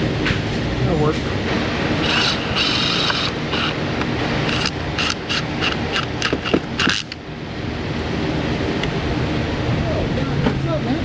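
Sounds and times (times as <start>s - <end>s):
hand ratchet clicking: 2.0s - 7.2s.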